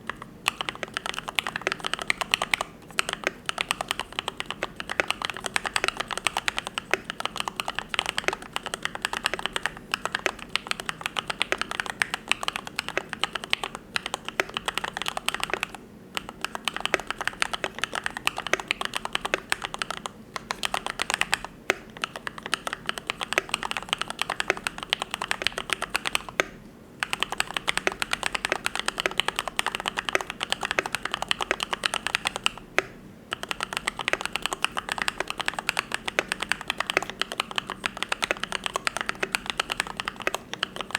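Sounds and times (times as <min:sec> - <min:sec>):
mechanical keyboard typing: 0:00.0 - 0:40.9.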